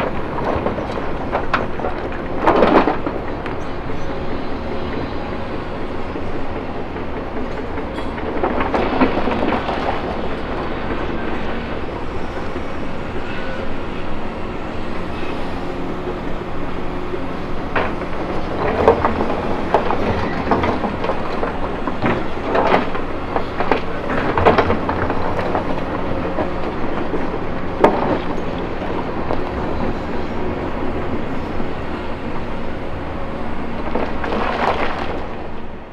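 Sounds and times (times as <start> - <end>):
excavator diesel engine running: 0.0 - 35.9.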